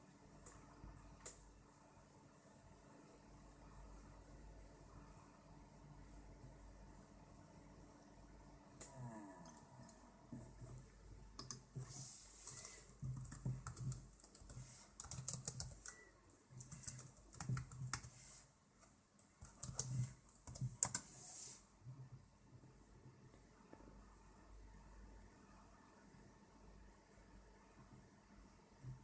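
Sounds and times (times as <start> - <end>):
laptop keyboard typing: 9.4 - 21.3.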